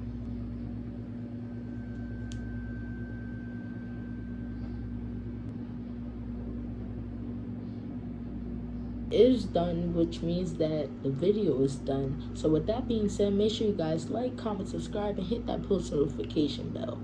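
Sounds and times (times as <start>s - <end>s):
low electrical hum: 0.0s - 17.0s
thin high tone: 1.2s - 5.5s.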